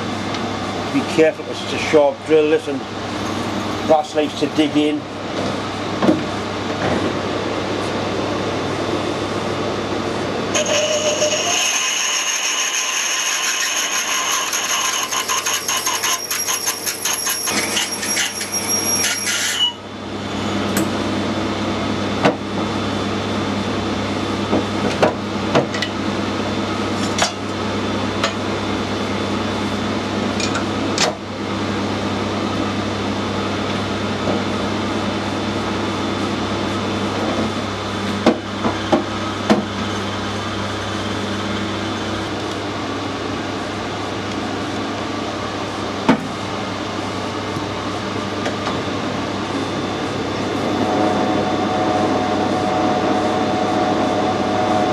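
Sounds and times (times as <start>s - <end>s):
drill squealing in brass: 10.6s - 19.8s
machine humming: 46.6s - 54.9s.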